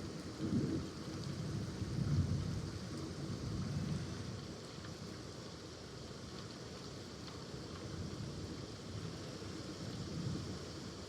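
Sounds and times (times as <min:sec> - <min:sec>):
heavy rain pouring: 0:00.0 - 0:11.0.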